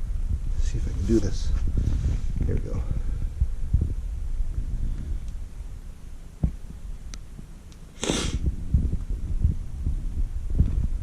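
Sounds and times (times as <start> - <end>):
short hiss: 7.9 - 8.4.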